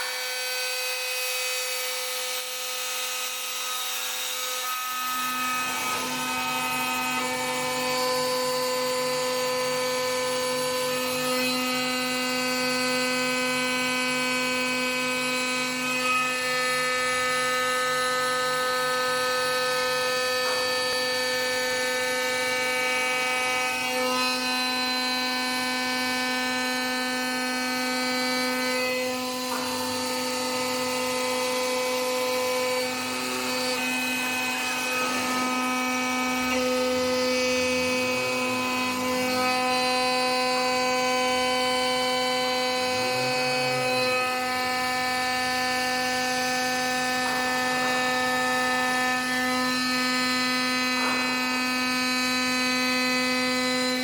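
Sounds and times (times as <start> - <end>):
stone-working machine whining: 0.0 - 54.0.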